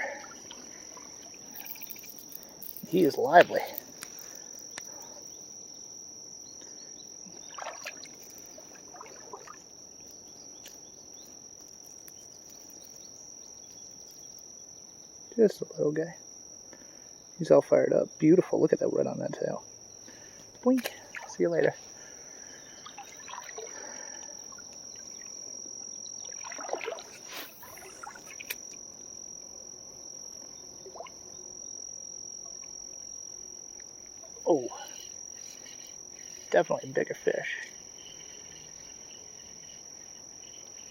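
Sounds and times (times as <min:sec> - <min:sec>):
crickets droning: 0:00.0 - 0:40.9
high-pitched insect trill: 0:00.0 - 0:40.9
clicks and rustles: 0:01.6 - 0:04.9
fish splashing at surface: 0:26.2 - 0:28.5.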